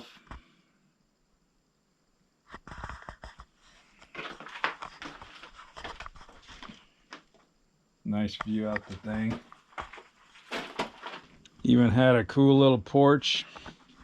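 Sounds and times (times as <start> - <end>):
footsteps crunching over debris: 4.0 - 7.4, 8.4 - 11.4.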